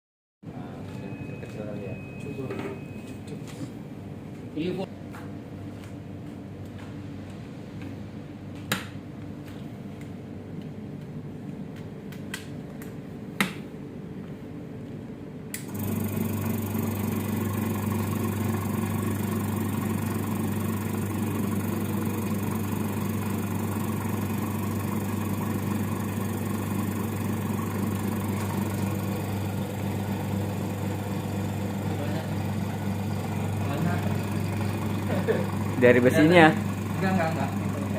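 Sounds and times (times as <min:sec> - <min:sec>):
vacuum pump humming: 0:15.5 - 0:37.9.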